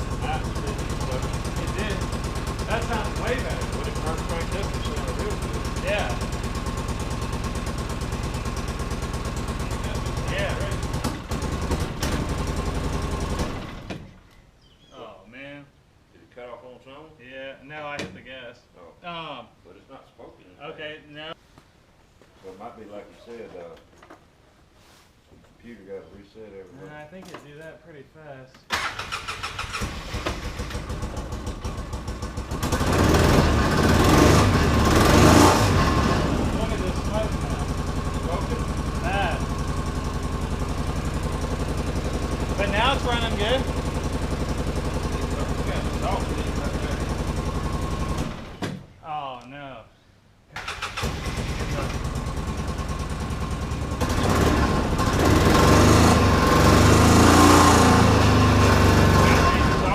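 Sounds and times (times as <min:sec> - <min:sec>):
engine running rough: 0:00.0 - 0:14.1, 0:29.2 - 0:48.6, 0:50.6 - 0:59.9.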